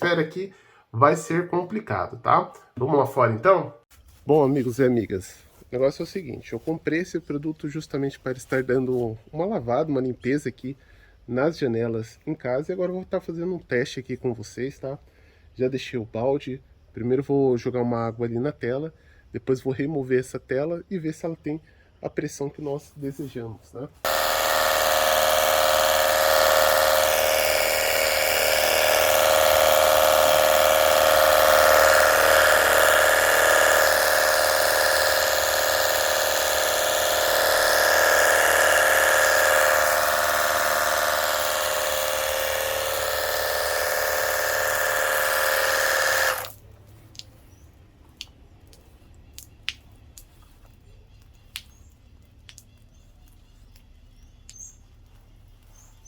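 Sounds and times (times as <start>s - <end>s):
electric pump whining: 24.0s - 46.6s.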